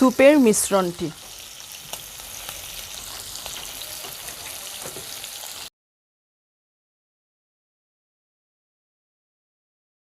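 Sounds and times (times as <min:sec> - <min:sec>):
chicken sizzling in hot oil: 0:00.0 - 0:05.7.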